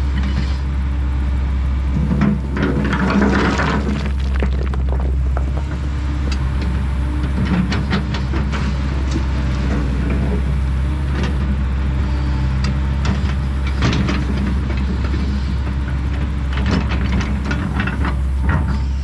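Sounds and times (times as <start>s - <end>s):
excavator diesel engine running: 0.0s - 19.0s
clanks and knocks: 2.0s - 8.6s.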